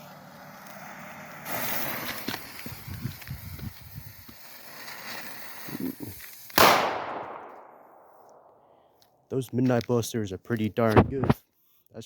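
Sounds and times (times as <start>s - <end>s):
hiss: 0.6s - 6.6s
loud firework bang: 6.6s - 7.8s.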